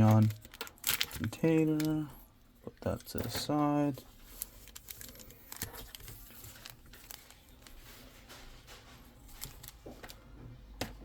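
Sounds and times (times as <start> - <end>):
card packaging handling: 0.0 - 2.1, 2.9 - 10.2.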